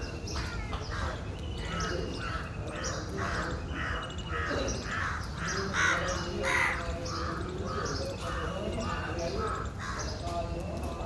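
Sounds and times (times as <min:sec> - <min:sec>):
crows cawing: 0:00.4 - 0:06.8, 0:09.5 - 0:10.2.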